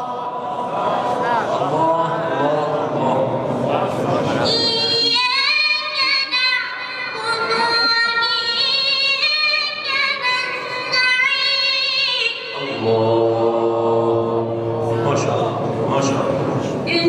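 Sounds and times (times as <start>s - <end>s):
high voice singing: 4.2s - 14.3s.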